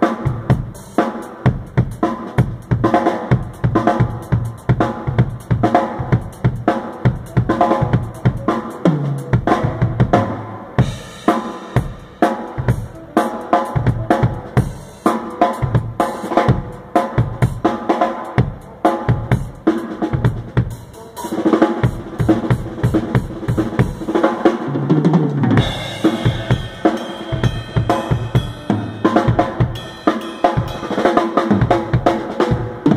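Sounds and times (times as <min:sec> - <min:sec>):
drum kit groove: 0:00.0 - 0:32.9
tom fills: 0:00.2 - 0:32.9
cymbals ringing: 0:25.6 - 0:32.8.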